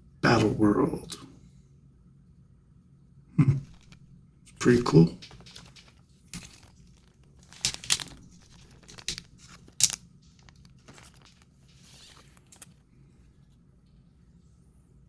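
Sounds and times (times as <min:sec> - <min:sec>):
papery rustles of card packaging: 0:03.6 - 0:04.0, 0:04.6 - 0:12.8.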